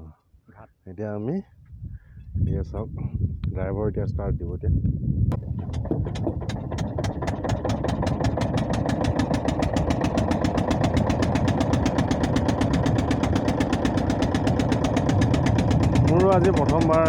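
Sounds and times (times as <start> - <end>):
boat engine knocking: 5.3 - 17.0.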